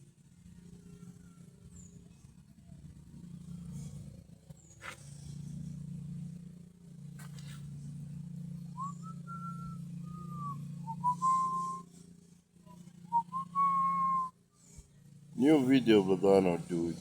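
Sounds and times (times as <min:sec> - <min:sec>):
low hum: 0:00.0 - 0:17.0
person whistling: 0:08.8 - 0:11.8, 0:13.1 - 0:14.3.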